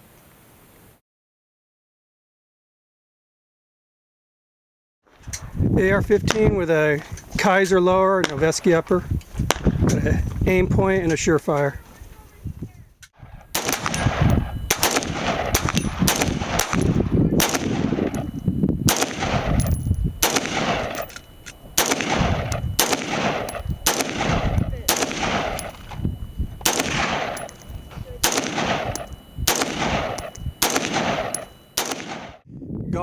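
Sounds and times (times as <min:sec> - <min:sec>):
rifle shots with echo: 0:13.5 - 0:32.4.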